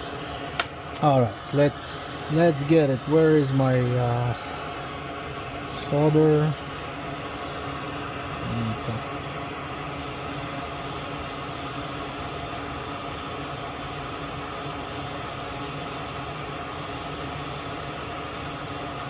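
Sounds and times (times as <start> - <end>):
steady background hiss: 0.0 - 9.2
faint hum tones: 0.0 - 19.0.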